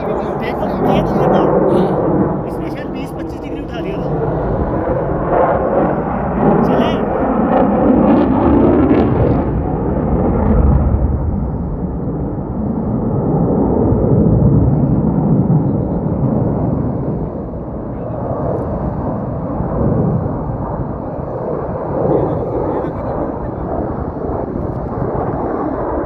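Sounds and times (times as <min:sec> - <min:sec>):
jet engines rumbling: 0:00.0 - 0:26.0.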